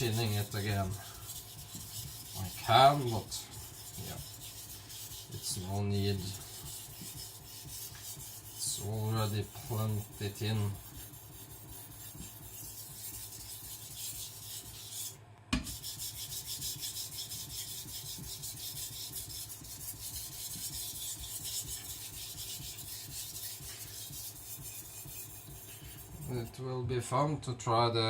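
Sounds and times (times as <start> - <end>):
knife scraping on whetstone: 0.0 - 26.6.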